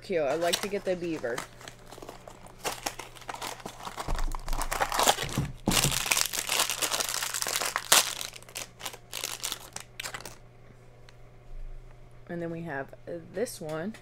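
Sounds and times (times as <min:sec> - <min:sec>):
packaging torn and crinkled: 0:00.3 - 0:10.4.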